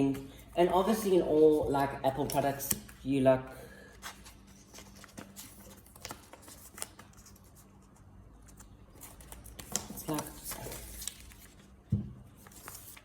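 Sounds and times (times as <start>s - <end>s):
paper rustling: 4.0s - 13.0s.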